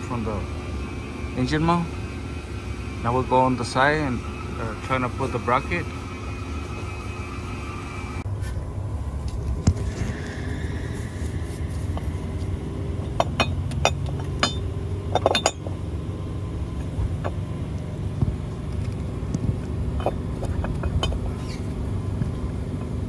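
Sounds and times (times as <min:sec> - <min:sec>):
steady low hum: 0:00.0 - 0:23.0
metal clinks and knocks: 0:13.0 - 0:15.8, 0:18.7 - 0:21.7.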